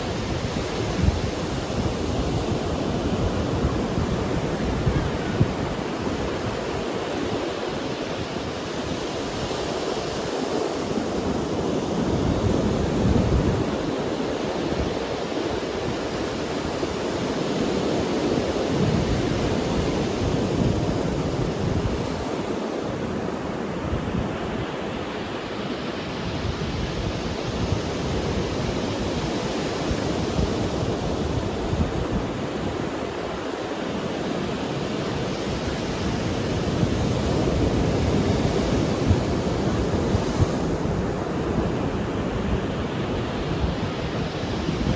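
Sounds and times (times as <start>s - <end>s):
sea waves breaking on beach: 0.0s - 44.9s.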